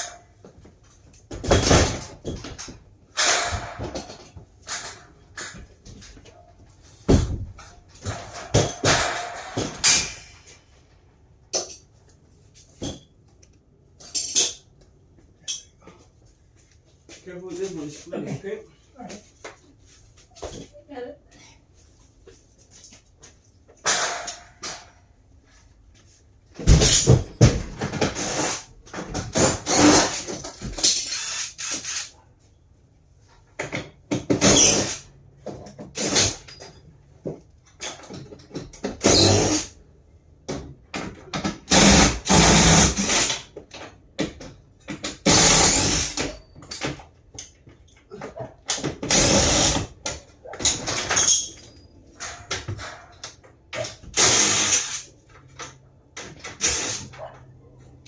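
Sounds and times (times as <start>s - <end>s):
power drill bursts: 45.2s - 46.2s, 54.2s - 55.0s.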